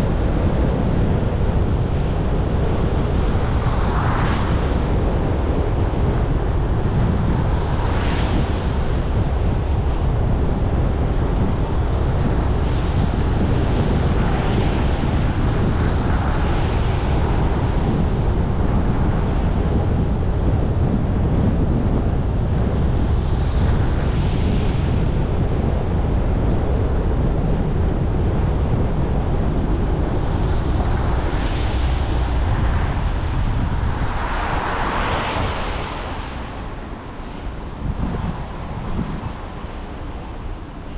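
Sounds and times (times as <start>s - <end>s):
traffic rumble: 24.8s - 40.9s.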